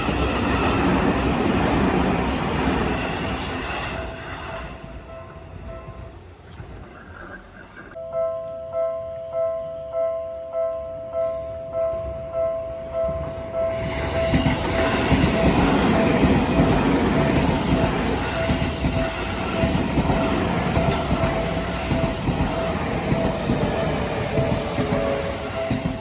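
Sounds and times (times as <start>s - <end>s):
train wheels clattering on rails: 0.0s - 7.9s, 11.2s - 26.0s
electric train passing: 0.0s - 26.0s
crossing warning bell ringing: 8.0s - 26.0s.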